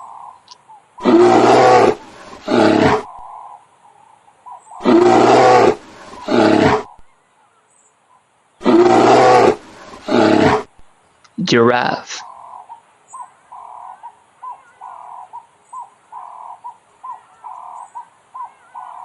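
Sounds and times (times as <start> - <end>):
bear roaring: 1.0 - 3.3, 4.8 - 7.0, 8.6 - 10.8.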